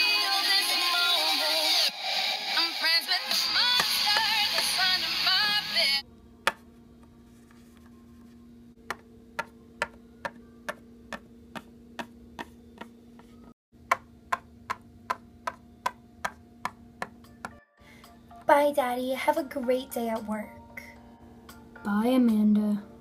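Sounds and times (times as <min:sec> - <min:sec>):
low steady hum: 0:06.0 - 0:23.0.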